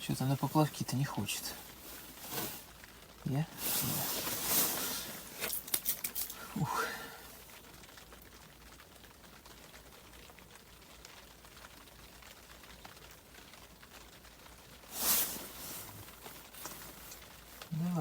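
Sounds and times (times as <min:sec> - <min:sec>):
background hiss: 0:00.0 - 0:18.0.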